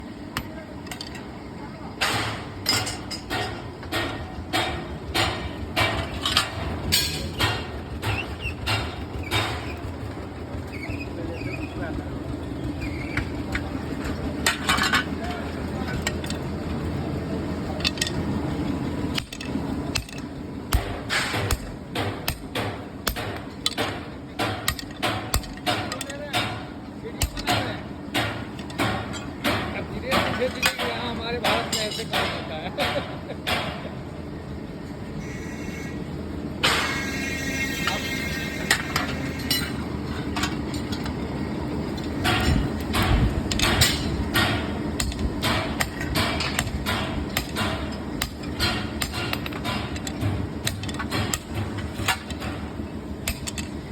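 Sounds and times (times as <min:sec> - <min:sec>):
steady low hum: 0:00.0 - 0:53.9
hammer striking metal strip: 0:19.2 - 0:26.6, 0:42.2 - 0:53.7.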